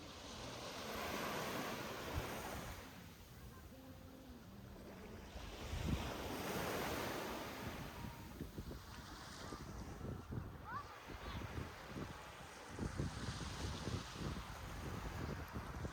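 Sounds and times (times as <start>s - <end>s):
surf waves breaking on sand: 0.0s - 15.9s.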